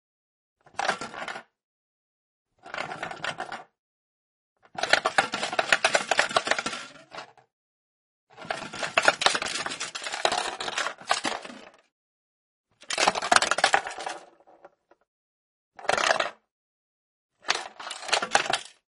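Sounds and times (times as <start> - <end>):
ball rattling inside plastic box: 4.8 - 7.2.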